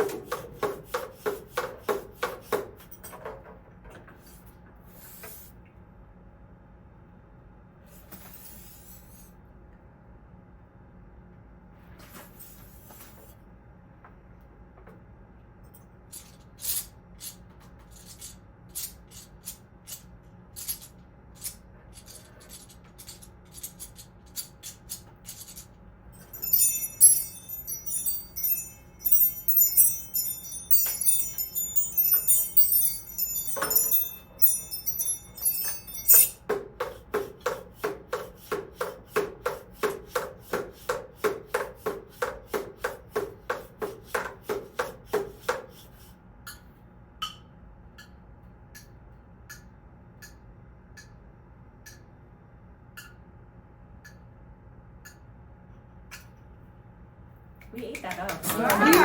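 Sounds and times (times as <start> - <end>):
glittering chime-like tinkling: 26.2 - 36.5
rhythmic scraping: 26.3 - 36.4.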